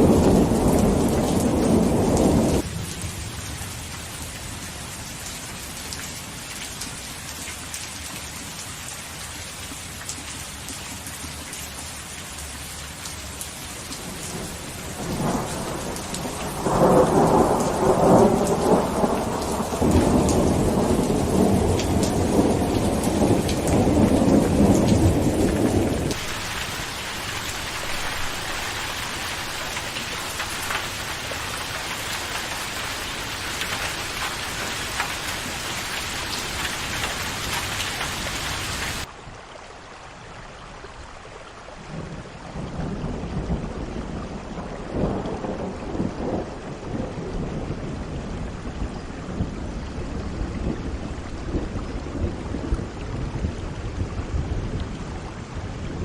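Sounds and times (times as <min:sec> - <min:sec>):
rolling thunder: 0:00.0 - 0:03.2, 0:14.0 - 0:31.0, 0:42.6 - 0:56.0
steady rain: 0:00.0 - 0:56.0.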